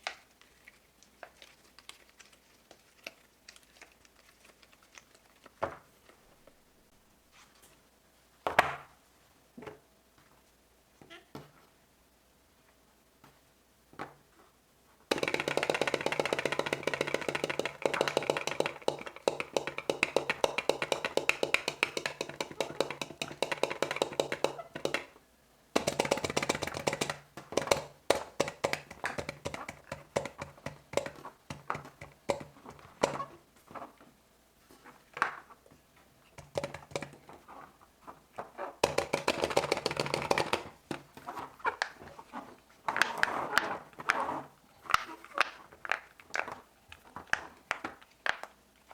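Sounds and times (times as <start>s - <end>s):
fidget toy popping clicks: 15.1s - 25.1s.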